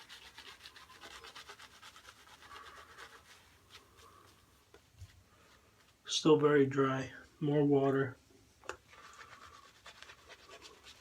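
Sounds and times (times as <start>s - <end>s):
shaving brush scrubbing cream: 0.0s - 4.0s, 9.0s - 11.0s.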